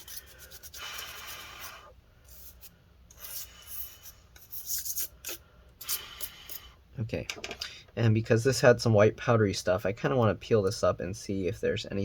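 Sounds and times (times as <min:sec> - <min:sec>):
small brush scrubbing: 0:00.0 - 0:06.6.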